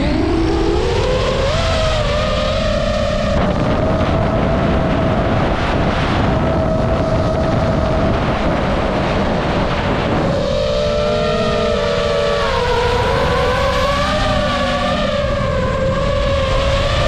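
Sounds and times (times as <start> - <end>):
wind rushing over microphone: 0.0 - 17.0
drone motors whining: 10.2 - 17.0.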